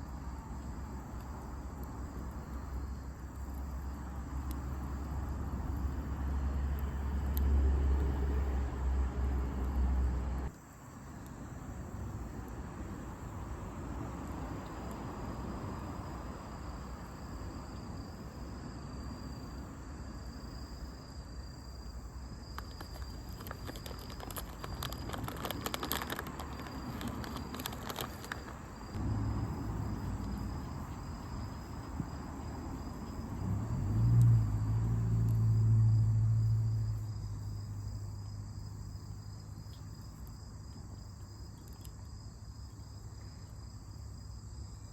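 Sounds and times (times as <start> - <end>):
insects trilling: 0.0 - 44.9
sharp crackles: 22.5 - 31.0
low hum: 29.0 - 38.2.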